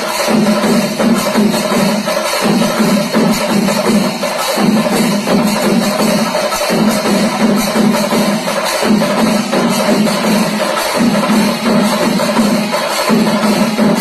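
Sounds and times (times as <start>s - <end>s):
clattering percussion: 0.0s - 14.0s
ritual drums: 0.0s - 14.0s.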